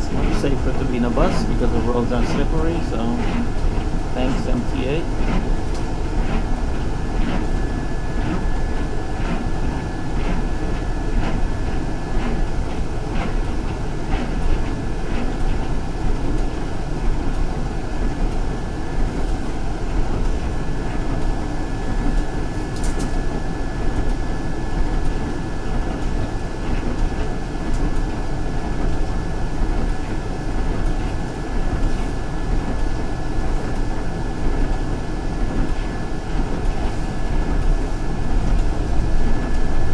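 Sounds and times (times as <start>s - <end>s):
bus engine and road rumble: 0.0s - 39.9s.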